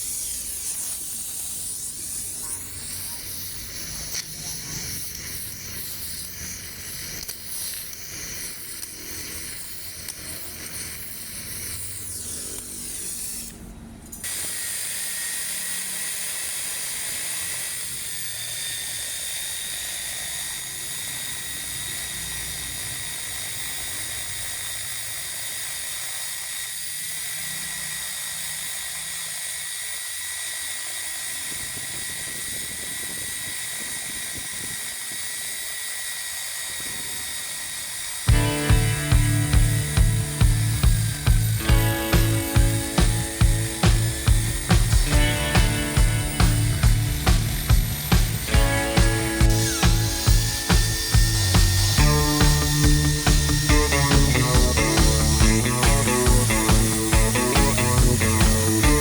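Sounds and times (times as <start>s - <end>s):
power tool whining: 0.0s - 59.0s.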